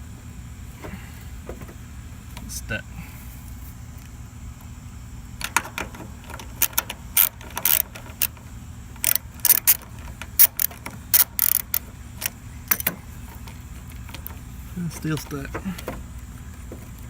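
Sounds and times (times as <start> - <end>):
starter relay clicking and rattling: 4.0 - 17.0.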